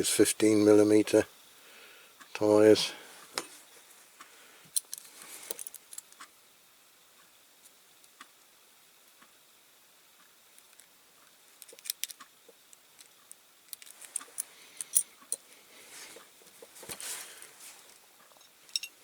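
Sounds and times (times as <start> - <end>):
soft rubbing: 15.5 - 18.0.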